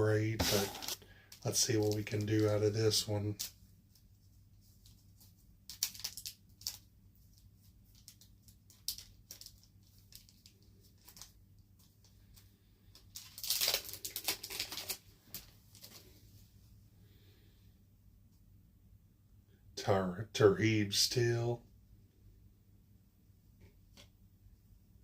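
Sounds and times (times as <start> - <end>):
card pack wrapper crinkling: 0.4 - 2.5, 4.9 - 6.9, 7.9 - 12.4, 13.0 - 16.1
wrapper ripping: 5.7 - 6.9, 7.9 - 11.3, 13.0 - 16.0.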